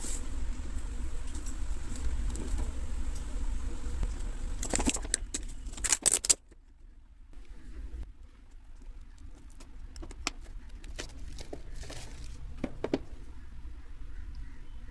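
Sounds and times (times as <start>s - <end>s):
packaging clicks and crinkles: 4.6s - 6.4s.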